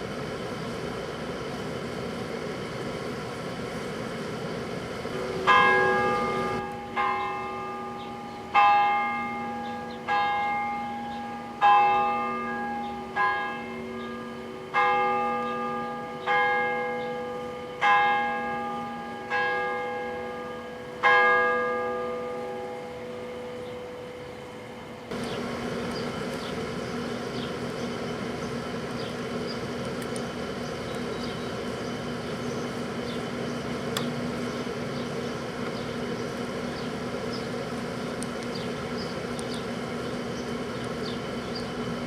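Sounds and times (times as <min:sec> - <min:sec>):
large bell tolling: 0:05.2 - 0:25.0.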